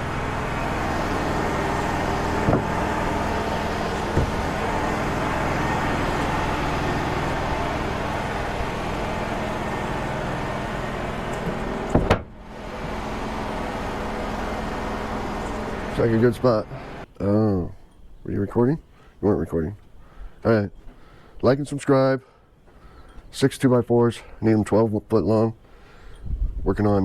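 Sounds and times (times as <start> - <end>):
sawmill engine idling: 0.0 - 17.7
sharp clunk: 2.4 - 2.7, 4.1 - 4.4, 11.4 - 12.4
light knocks: 4.0 - 4.4.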